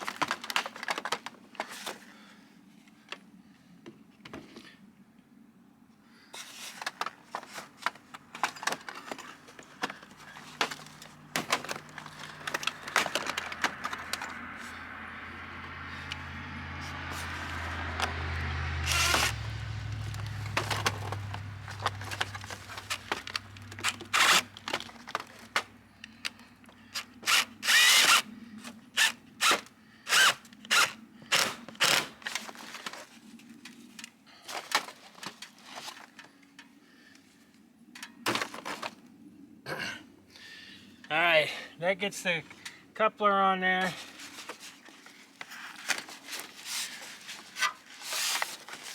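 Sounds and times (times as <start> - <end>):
parts clicking and knocking: 6.7 - 14.8, 17.8 - 28.2
power drill running: 18.8 - 19.4, 27.3 - 28.3.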